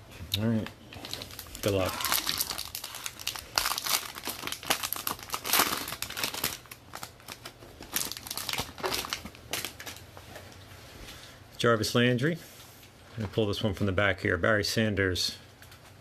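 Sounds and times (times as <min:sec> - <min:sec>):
wrappers crinkling: 0:00.9 - 0:10.5
card pack wrappers tearing: 0:01.0 - 0:10.0.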